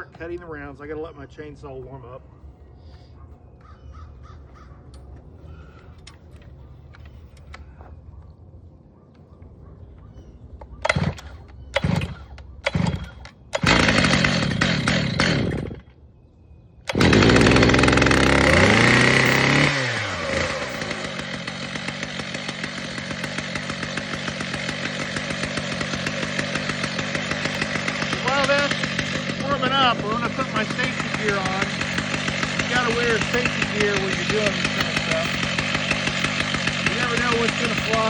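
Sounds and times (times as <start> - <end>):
chainsaw pull-starting and running: 10.6 - 16.0, 16.9 - 38.0.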